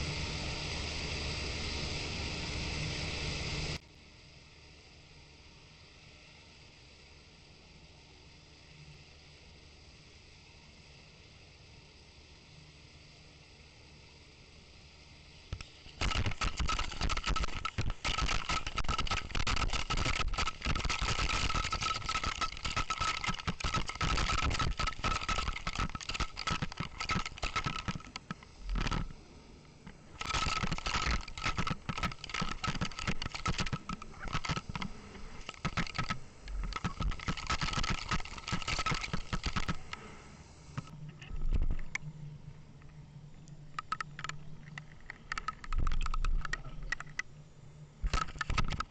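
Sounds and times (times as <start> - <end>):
steady high whine: 0.0 - 48.9
rapid mechanical clicking and rattling: 15.5 - 42.0, 43.7 - 47.3, 48.0 - 48.9.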